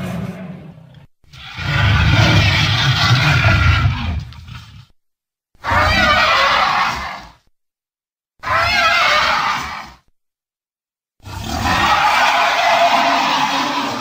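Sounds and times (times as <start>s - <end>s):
screeching creature roar: 1.3s - 4.9s, 5.6s - 7.4s, 8.4s - 10.0s, 11.2s - 14.0s.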